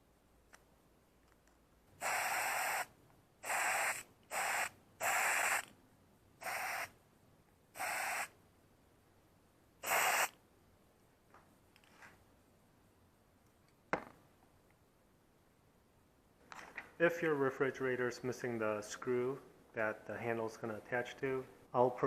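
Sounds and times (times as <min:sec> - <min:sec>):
aerosol spray can hissing: 0:02.0 - 0:05.7, 0:06.4 - 0:06.9, 0:07.8 - 0:08.4, 0:09.8 - 0:10.4.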